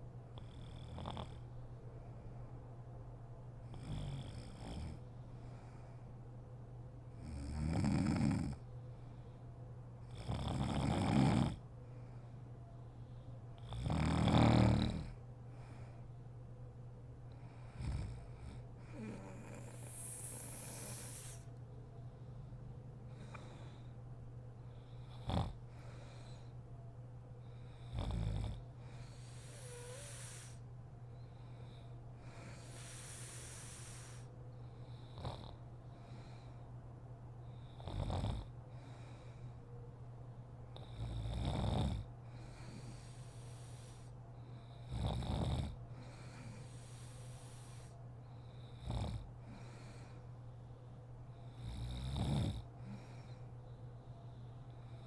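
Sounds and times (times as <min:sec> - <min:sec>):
steady low hum: 0:00.0 - 0:55.0
woman snoring: 0:00.4 - 0:01.4, 0:07.2 - 0:08.6, 0:10.1 - 0:11.6, 0:13.6 - 0:15.2, 0:17.8 - 0:21.5, 0:25.1 - 0:25.6, 0:27.9 - 0:30.6, 0:32.3 - 0:34.3, 0:37.8 - 0:38.5, 0:40.8 - 0:42.0, 0:44.9 - 0:47.9, 0:48.8 - 0:49.6, 0:51.5 - 0:53.0
airy breaths: 0:17.3 - 0:28.0, 0:28.6 - 0:37.8, 0:38.6 - 0:39.7, 0:42.2 - 0:44.9, 0:45.8 - 0:51.6, 0:52.6 - 0:55.0.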